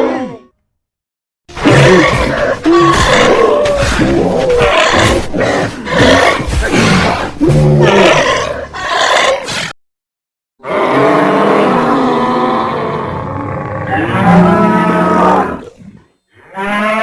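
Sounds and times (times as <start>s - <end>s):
cartoon monster roaring: 1.5s - 9.7s, 10.6s - 15.8s.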